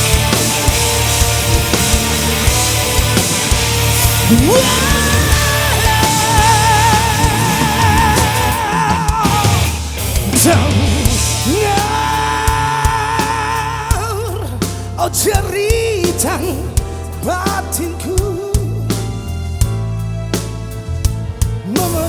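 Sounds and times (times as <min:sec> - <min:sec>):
lead guitar bending notes: 0:00.0 - 0:16.0
bass guitar: 0:00.0 - 0:22.0
drums: 0:00.0 - 0:22.0.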